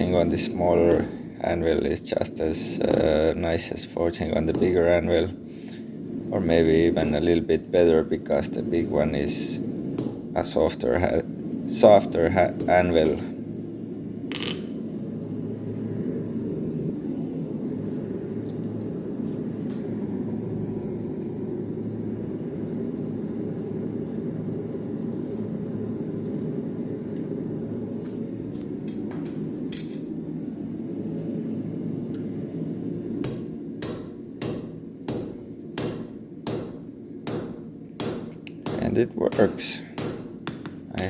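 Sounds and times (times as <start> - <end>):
hammer blows on hot steel: 0.7 - 1.4, 2.7 - 3.4, 4.4 - 5.1, 6.7 - 7.5, 9.6 - 10.6, 33.2 - 41.0.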